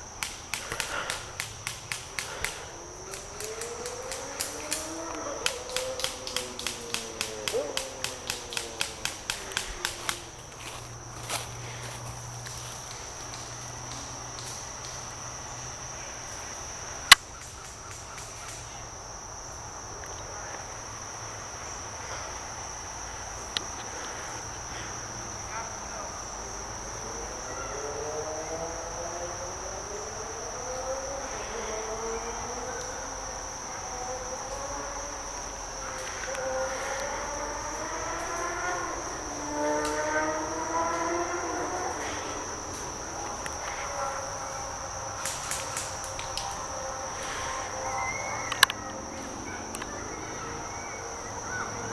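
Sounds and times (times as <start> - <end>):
sharp crack: 0.0 - 11.5, 17.1 - 18.7, 45.2 - 46.6
insects droning: 0.0 - 51.9.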